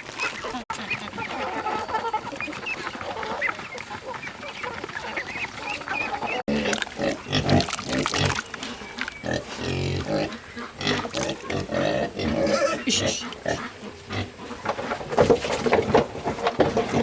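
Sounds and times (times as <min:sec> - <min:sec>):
pigs grunting and squealing: 0:04.2 - 0:15.2, 0:16.6 - 0:17.0.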